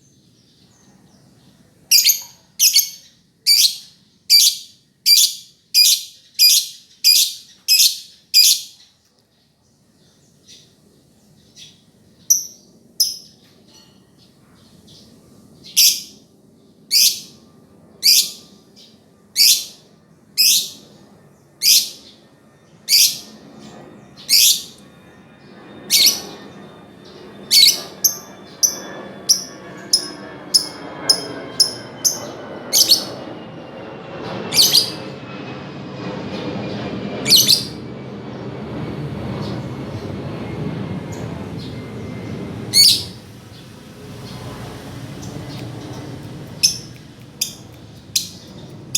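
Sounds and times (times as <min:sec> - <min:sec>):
low background hum: 0:00.0 - 0:48.9
lovebird chirping: 0:01.9 - 0:08.8, 0:11.6 - 0:13.9, 0:24.2 - 0:24.8, 0:27.4 - 0:33.1, 0:42.7 - 0:44.5, 0:45.2 - 0:48.9.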